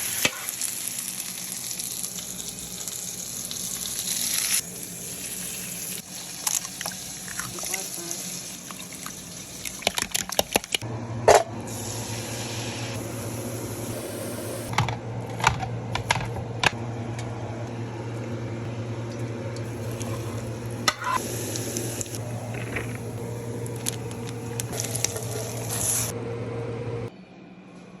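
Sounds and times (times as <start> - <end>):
rice sizzling in a hot pan: 0.0 - 9.8
steady low hum: 10.8 - 27.7.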